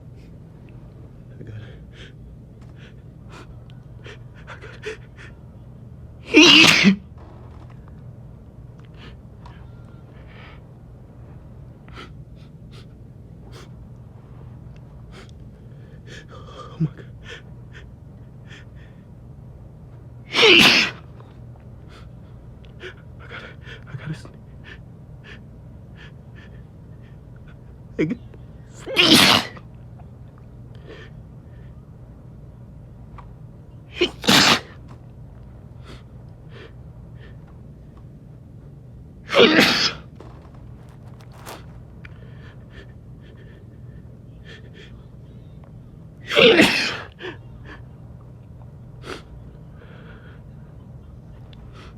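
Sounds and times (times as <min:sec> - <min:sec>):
steady low hum: 0:00.0 - 0:51.9
man sneezing: 0:06.3 - 0:07.0, 0:20.3 - 0:21.0, 0:28.8 - 0:29.6, 0:33.9 - 0:34.8, 0:39.3 - 0:40.1, 0:46.2 - 0:47.4.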